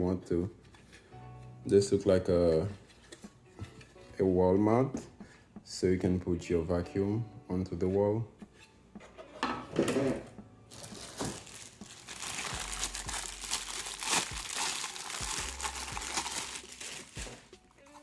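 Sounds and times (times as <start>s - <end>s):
packaging tearing: 10.7s - 17.5s
packaging crinkling and rustling: 10.7s - 18.0s.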